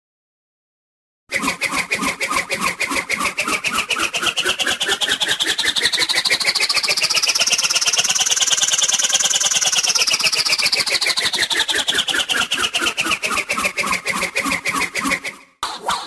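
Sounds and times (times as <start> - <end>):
fluttering buzz: 1.4 - 15.4
whistling tone rising in pitch: 2.0 - 11.6.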